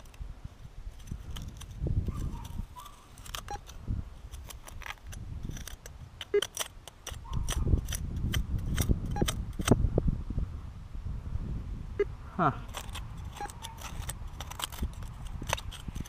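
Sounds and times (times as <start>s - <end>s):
metallic clicks and scrapes: 0.0s - 0.2s, 0.8s - 9.8s, 12.6s - 16.0s
soil handling rustle: 0.0s - 8.7s, 12.6s - 16.0s.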